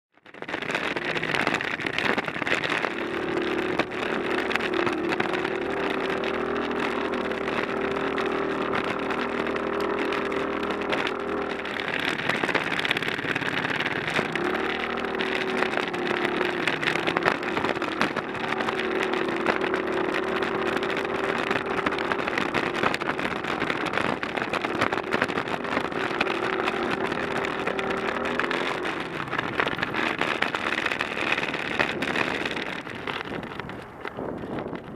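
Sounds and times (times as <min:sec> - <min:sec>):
scooter motor running: 0:00.1 - 0:34.9
rough riding rumble: 0:00.2 - 0:34.9.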